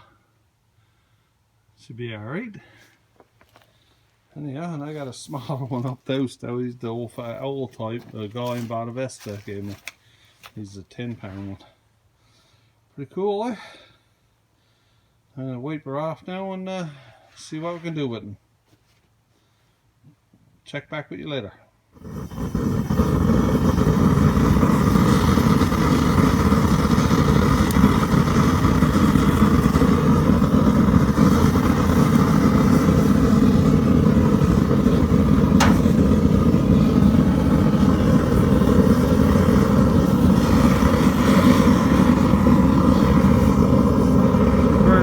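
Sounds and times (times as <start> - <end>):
forge rushing rumble: 22.1 - 45.0
sharp click: 35.6 - 36.0.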